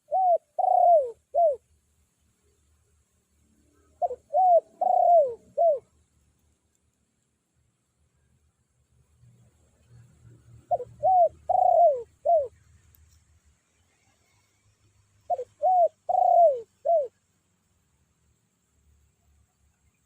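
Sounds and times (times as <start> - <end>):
dove cooing: 0.0 - 1.6, 4.0 - 5.9, 10.6 - 12.6, 15.3 - 17.2.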